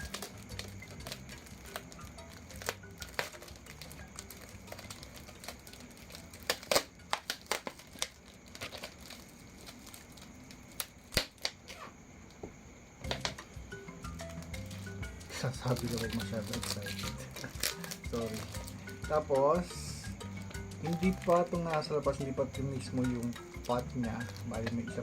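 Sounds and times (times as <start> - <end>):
plastic packaging crinkling and tearing: 0.0 - 11.8, 14.2 - 19.0, 20.8 - 21.9, 22.9 - 25.0
sharp crackles: 0.0 - 12.0, 14.2 - 19.1, 20.4 - 22.0.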